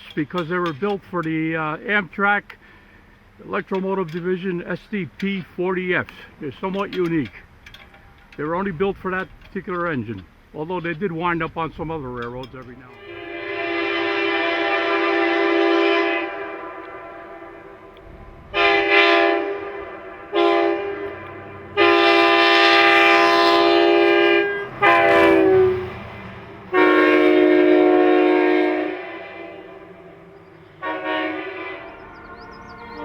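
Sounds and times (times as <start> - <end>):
locomotive air horn blasts: 13.0 - 33.0.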